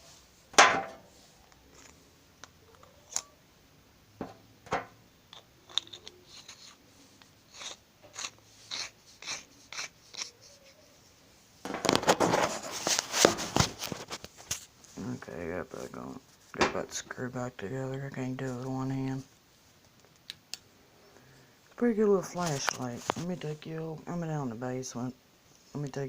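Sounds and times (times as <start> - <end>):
flashlight parts clicking: 5.3 - 6.8.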